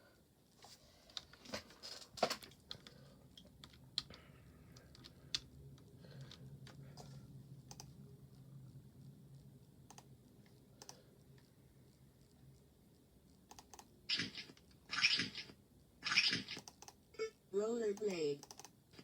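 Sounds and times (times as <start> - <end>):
sharp clicks and ticks: 7.6 - 8.0, 9.8 - 11.5, 13.4 - 14.8, 16.5 - 17.0, 18.0 - 18.8.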